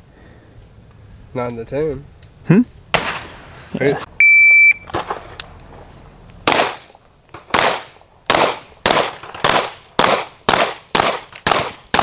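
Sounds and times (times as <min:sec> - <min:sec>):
pistol shots echoing: 0:02.9 - 0:03.4, 0:06.4 - 0:12.0.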